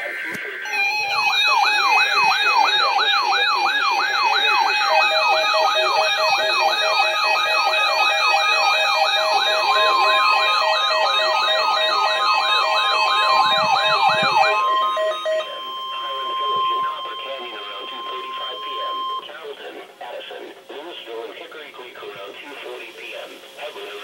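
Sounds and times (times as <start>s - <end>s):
repeating beeps: 0.0s - 19.2s
steady alert tone: 0.0s - 19.2s
yelp siren: 0.0s - 19.2s
higher wavering siren: 0.6s - 19.2s.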